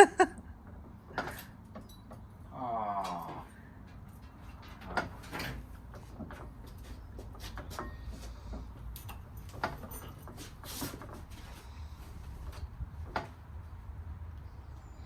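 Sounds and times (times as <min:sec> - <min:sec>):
tools and metal parts clicking: 0:01.2 - 0:02.3.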